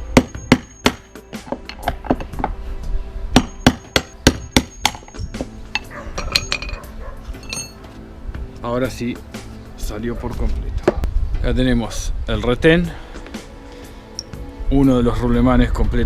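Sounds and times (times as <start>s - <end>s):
hammer striking steel drift: 0.0s - 1.9s, 3.4s - 6.8s.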